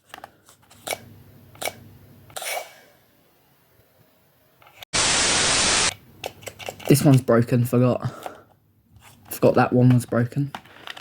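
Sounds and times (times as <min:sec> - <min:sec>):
loud hiss: 0:05.0 - 0:05.9.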